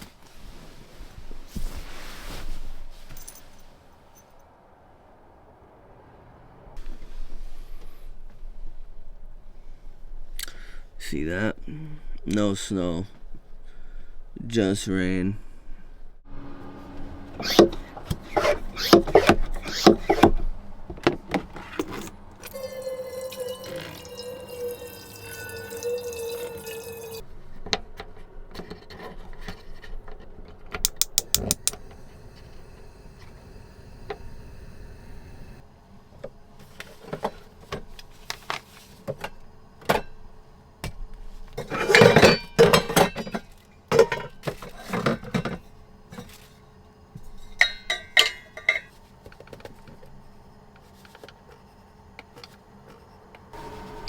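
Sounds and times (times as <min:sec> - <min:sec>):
clinks and clatter of dishes: 0:21.7 - 0:27.2, 0:41.6 - 0:46.5, 0:47.2 - 0:49.0.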